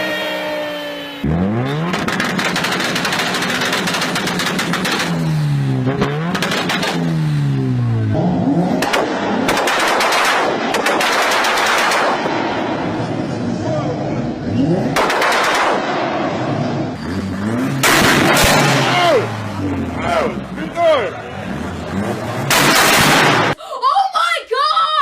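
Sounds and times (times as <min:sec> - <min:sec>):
car engine revving: 0:00.0 - 0:23.6
exhaust crackling pops: 0:01.8 - 0:05.3, 0:05.9 - 0:07.2, 0:08.7 - 0:12.4, 0:17.8 - 0:19.6.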